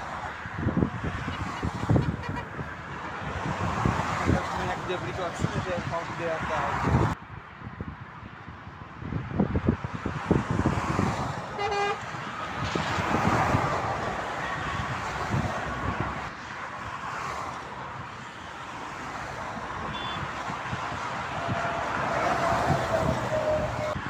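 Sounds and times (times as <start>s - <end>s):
motorway traffic passing: 0.0s - 24.0s
short car horn toot: 19.9s - 20.2s.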